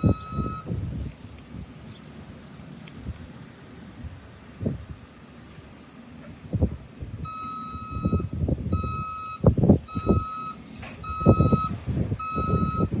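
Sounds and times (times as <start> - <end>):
reversing alarm beeping: 0.0 - 0.8, 7.2 - 13.0.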